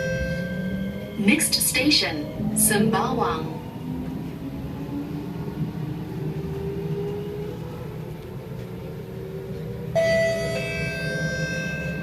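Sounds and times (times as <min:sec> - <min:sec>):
train wheels rumbling: 0:00.0 - 0:12.0
high ringing tone: 0:10.0 - 0:12.0.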